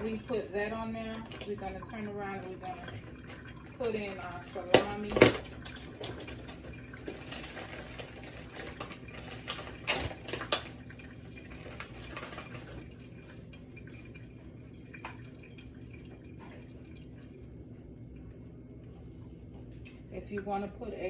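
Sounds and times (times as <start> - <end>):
steady low hum: 0.0 - 21.0
packaging rustling and clicks: 6.3 - 10.9, 11.5 - 12.8.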